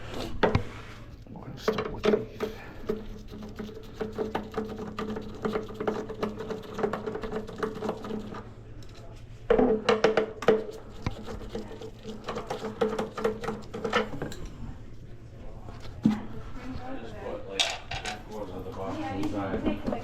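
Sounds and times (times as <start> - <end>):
hands and tools clicking and knocking: 1.6 - 14.5.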